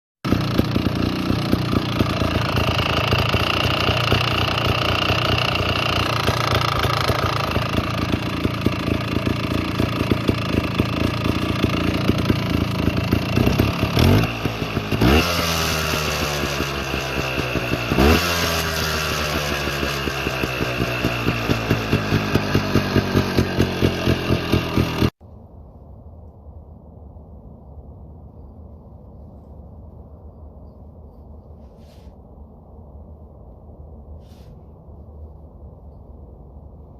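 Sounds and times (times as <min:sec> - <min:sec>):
motorcycle engine idling and revving: 0:00.2 - 0:25.2.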